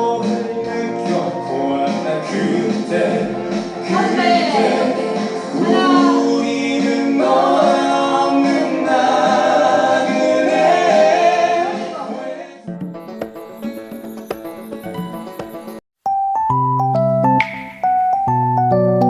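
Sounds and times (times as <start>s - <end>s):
song with sung melody: 0.0s - 14.4s
piano-like keyboard notes: 13.4s - 19.0s.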